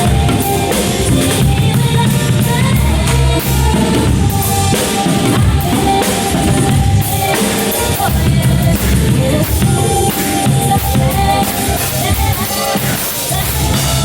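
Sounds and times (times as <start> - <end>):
backing music: 0.0 - 14.0
drum kit playing: 0.0 - 14.0.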